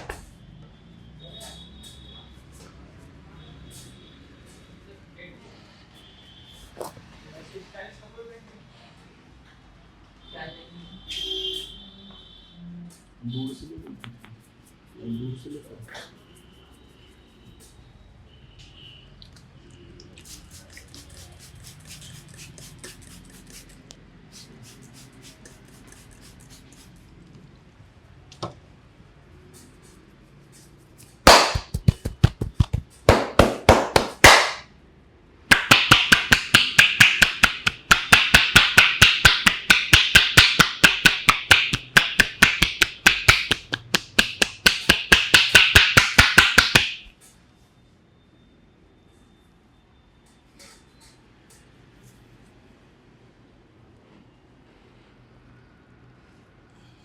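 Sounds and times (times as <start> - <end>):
hands slapping in massage: 31.3 - 34.7, 35.5 - 47.1.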